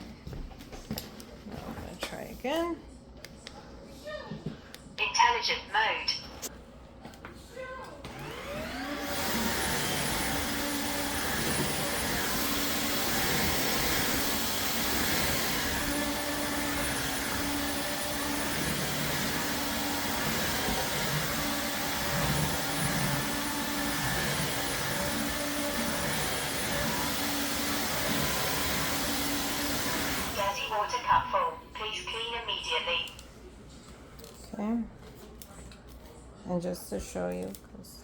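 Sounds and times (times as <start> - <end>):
vacuum cleaner motor running: 8.0 - 31.6.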